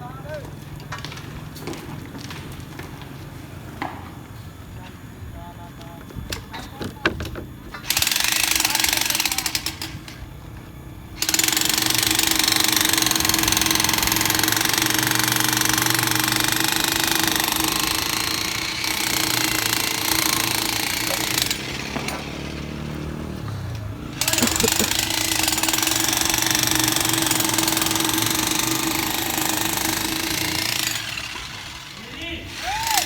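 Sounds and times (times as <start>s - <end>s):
jackhammer hammering concrete: 7.8s - 10.2s, 11.2s - 23.2s, 24.1s - 33.0s.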